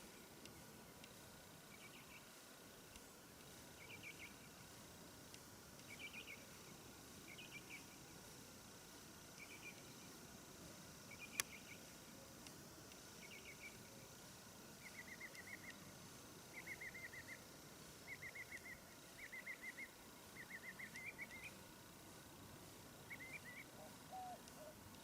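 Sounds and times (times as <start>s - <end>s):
low steady hiss: 0.0s - 25.0s.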